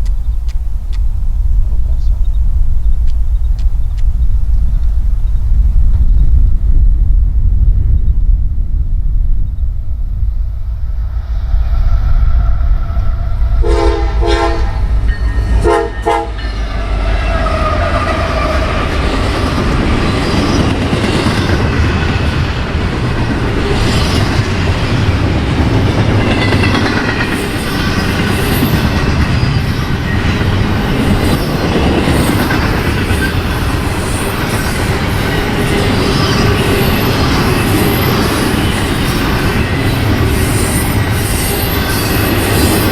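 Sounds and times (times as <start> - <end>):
freight train rumbling past: 0.0 - 42.9
locomotive horn blasts: 13.6 - 18.8
train wheel squeals: 15.0 - 21.7, 26.2 - 42.9.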